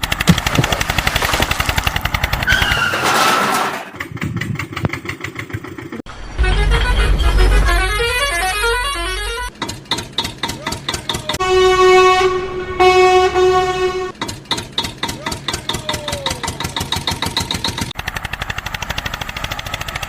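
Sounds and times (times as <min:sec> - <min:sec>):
horn toots: 0:06.2 - 0:09.6, 0:11.3 - 0:14.2
short stepped tune over bass: 0:06.2 - 0:09.6.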